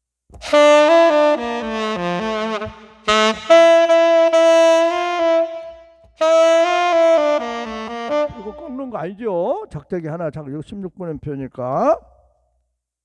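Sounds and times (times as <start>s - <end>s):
saxophone melody: 0.4s - 9.2s.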